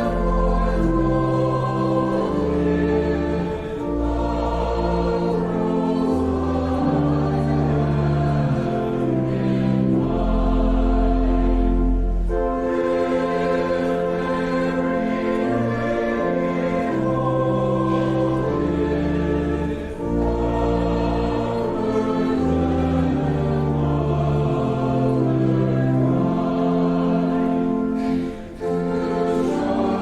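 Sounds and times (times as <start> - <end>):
choir singing church music: 0.0 - 30.0.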